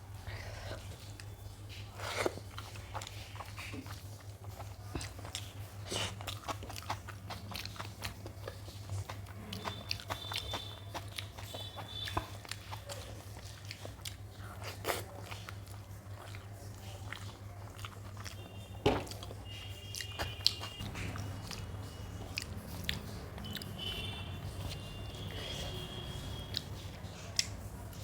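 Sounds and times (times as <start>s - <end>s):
person chewing food: 0.0s - 28.0s
steady low hum: 20.7s - 28.0s.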